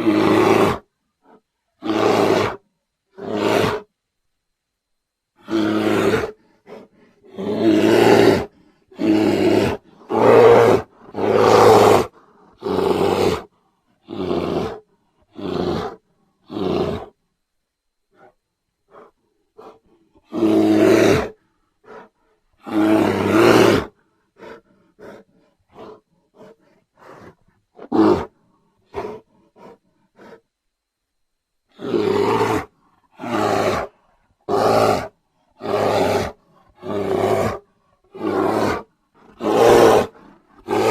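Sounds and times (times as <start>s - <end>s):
bear grunting: 0.0s - 3.9s, 5.4s - 17.2s, 18.1s - 30.4s, 31.7s - 40.9s
bear roaring: 0.0s - 3.9s, 5.4s - 17.2s, 18.9s - 30.4s, 31.7s - 40.9s.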